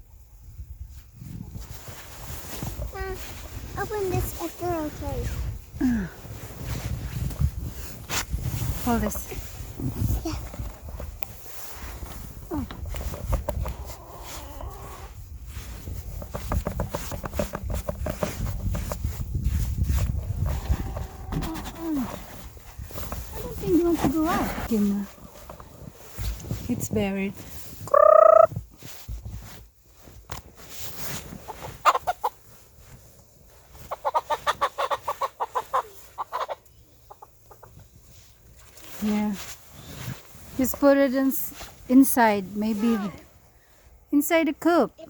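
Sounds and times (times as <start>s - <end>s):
wind rumble on microphone: 0.0s - 30.4s
footsteps crunching in snow: 1.2s - 27.9s, 28.5s - 36.2s
chickens clucking: 27.9s - 28.5s, 31.6s - 32.4s, 33.9s - 37.8s.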